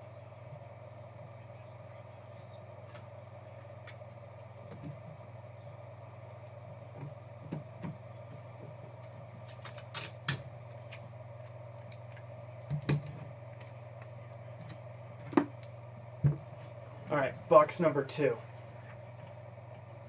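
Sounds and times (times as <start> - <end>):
low electrical hum: 0.0 - 20.0
cards and plastic holders clicking: 9.4 - 11.0.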